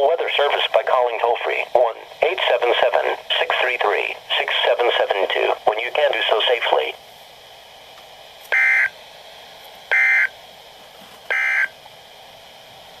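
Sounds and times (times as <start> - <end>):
faint radio hiss: 0.0 - 9.7
digital data tone bursts: 8.5 - 8.9, 9.9 - 10.3, 11.3 - 11.7.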